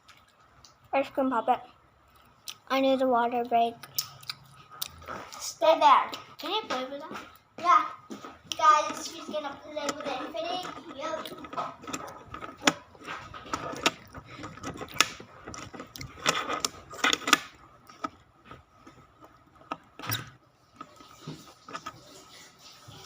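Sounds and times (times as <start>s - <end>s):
plastic rubbing: 8.2s - 23.0s.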